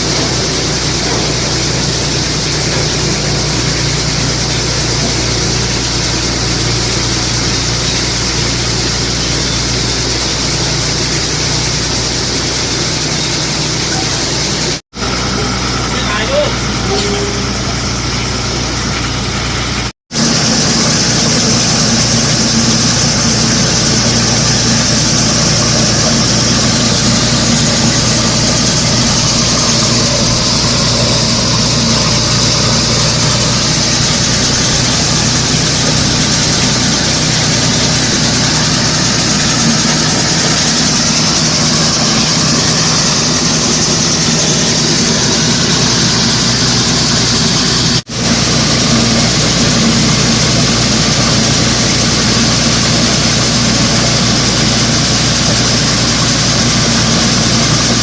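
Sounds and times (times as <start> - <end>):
engine running steadily: 0.0 - 58.0
loud hiss: 19.6 - 58.0.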